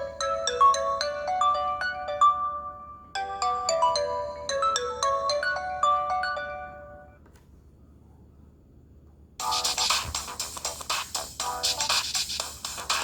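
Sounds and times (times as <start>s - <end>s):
phone ringtone melody: 0.0s - 7.2s.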